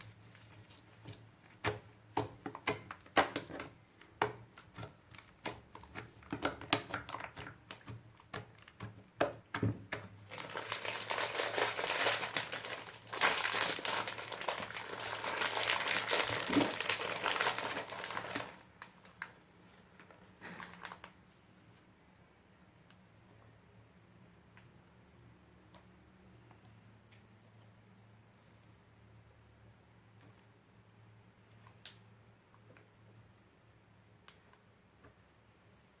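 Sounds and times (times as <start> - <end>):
slime popping and crackling: 1.5 - 18.7.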